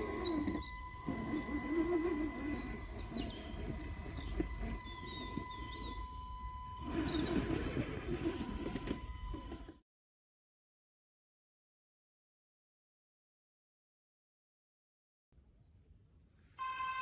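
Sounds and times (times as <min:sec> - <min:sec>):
pigeon cooing: 0:00.0 - 0:09.8
small birds chirping: 0:00.0 - 0:09.8
faint high tone: 0:16.6 - 0:17.0.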